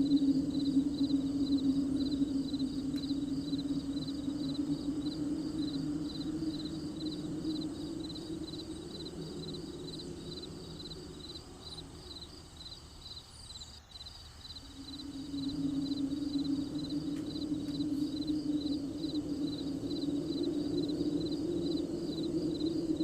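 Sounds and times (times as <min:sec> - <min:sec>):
low steady hum: 0:00.0 - 0:13.4, 0:14.6 - 0:23.0
crickets chirping: 0:00.0 - 0:23.0.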